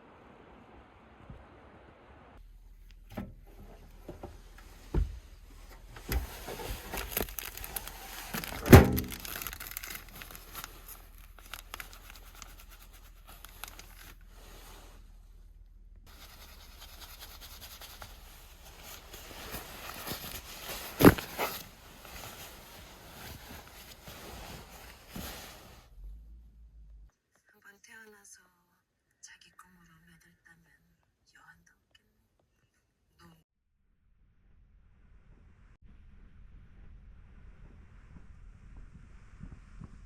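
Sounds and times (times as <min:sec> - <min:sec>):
rustling and crinkling: 0:02.7 - 0:15.3, 0:16.0 - 0:26.0
objects thudding: 0:03.1 - 0:10.9, 0:16.1 - 0:25.8.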